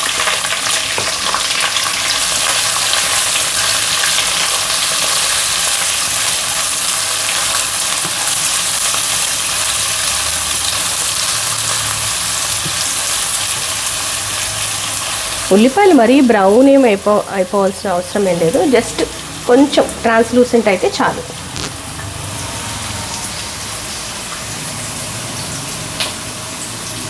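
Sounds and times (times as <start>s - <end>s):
food sizzling in hot oil: 0.0s - 27.0s
spatula stirring in a pan: 2.1s - 15.3s
small crackles: 21.5s - 21.8s.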